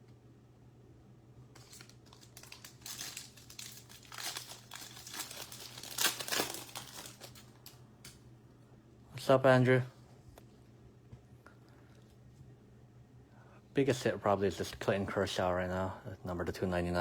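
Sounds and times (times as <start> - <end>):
wrapper being torn and crinkled: 1.6 - 8.2.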